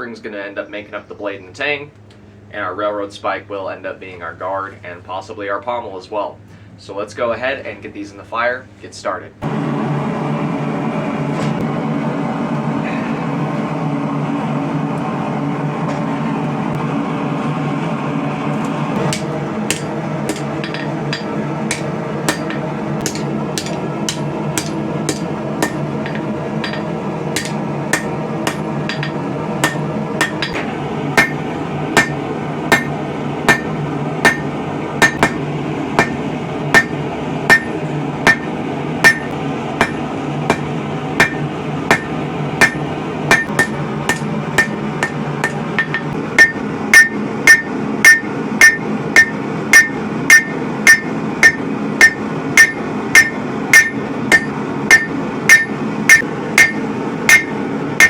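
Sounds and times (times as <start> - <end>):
hammer striking steel on anvil: 19.0 - 57.6.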